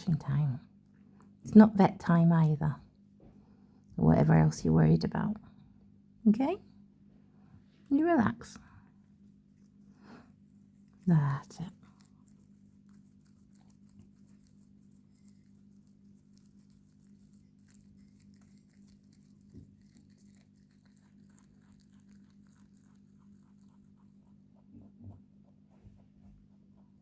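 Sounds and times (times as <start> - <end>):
steady low hum: 0.0 - 27.0
rabbit chewing food: 9.1 - 27.0.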